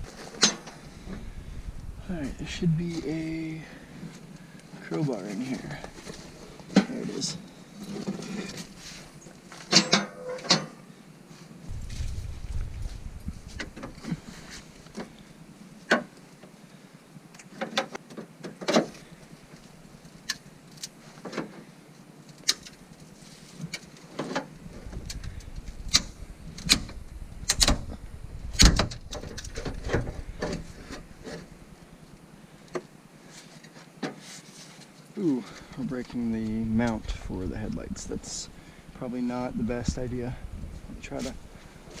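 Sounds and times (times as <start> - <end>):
low rumble: 0.0 - 3.9, 11.7 - 15.4, 24.6 - 32.2.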